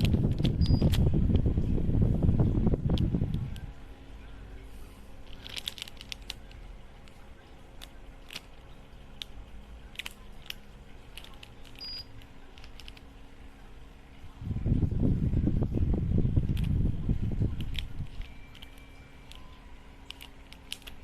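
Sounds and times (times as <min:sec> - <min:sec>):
fan motor humming: 0:00.0 - 0:21.0
light clicks and crinkling: 0:05.2 - 0:13.1, 0:17.5 - 0:21.0.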